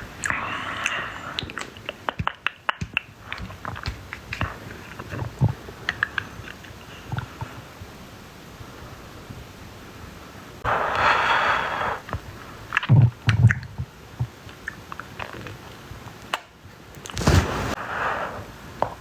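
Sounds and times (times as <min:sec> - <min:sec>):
stomach growling: 0:00.1 - 0:08.0, 0:10.7 - 0:16.2
hissing sip: 0:00.2 - 0:02.2, 0:10.6 - 0:13.6.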